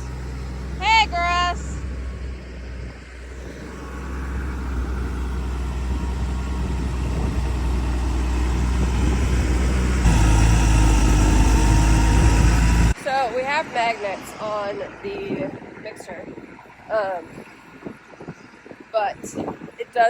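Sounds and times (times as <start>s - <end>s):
farm vehicle engine running: 0.0s - 15.7s.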